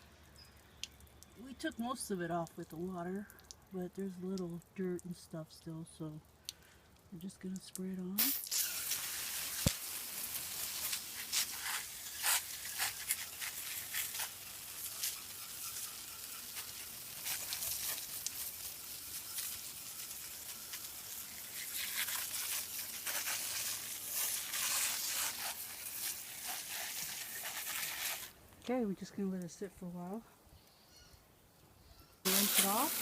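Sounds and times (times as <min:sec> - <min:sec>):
aerosol can spraying: 0:08.2 - 0:09.8, 0:32.3 - 0:33.0.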